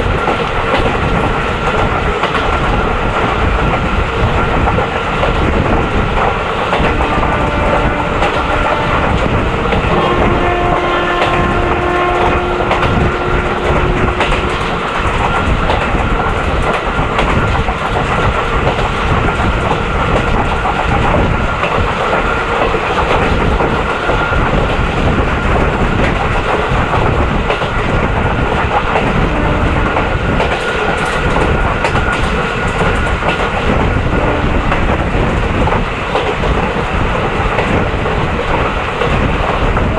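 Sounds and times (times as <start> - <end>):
train wheels clickety-clack: 0.0 - 39.9
train horn: 6.8 - 15.0, 29.1 - 30.2, 34.0 - 34.8.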